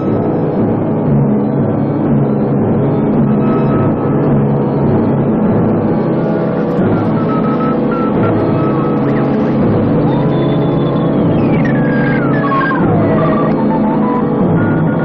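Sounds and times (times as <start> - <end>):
organ-like sustained chords: 3.0 - 15.0
thin high wavering tone: 6.8 - 15.0.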